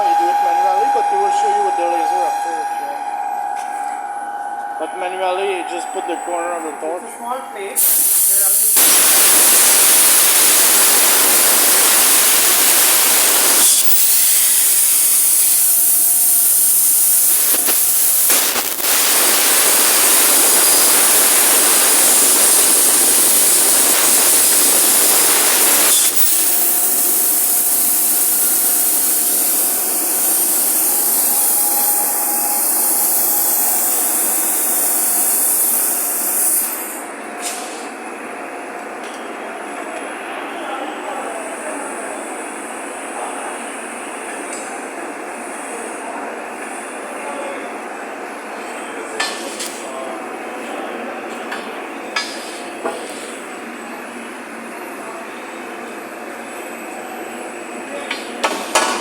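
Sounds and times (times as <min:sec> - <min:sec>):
plasma torch hissing: 0:07.8 - 0:37.8.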